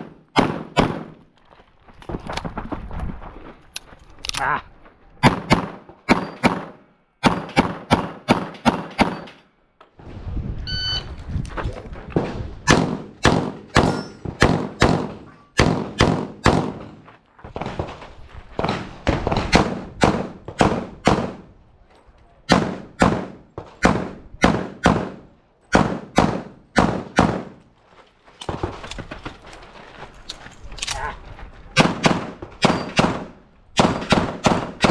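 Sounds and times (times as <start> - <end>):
pistol shots: 0.0 - 1.2, 5.2 - 9.3, 12.7 - 17.0, 18.6 - 21.5, 22.5 - 27.6, 31.8 - 34.9.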